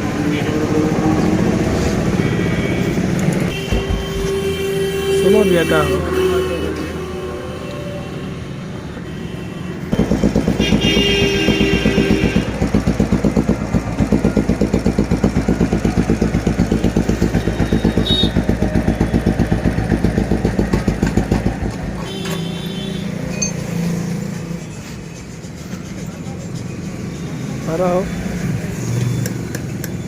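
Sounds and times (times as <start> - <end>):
motorcycle engine thumping: 3.5 - 4.4, 10.0 - 22.4.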